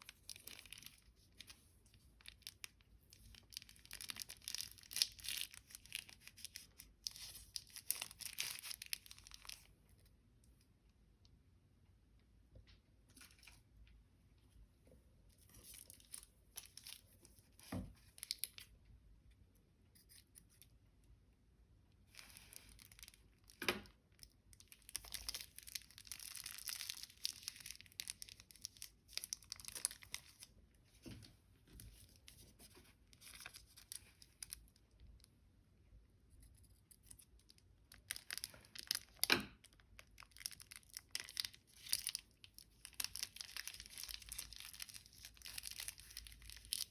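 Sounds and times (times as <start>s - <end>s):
slime crackling and popping: 2.2s - 9.7s, 22.1s - 30.5s, 37.0s - 46.9s.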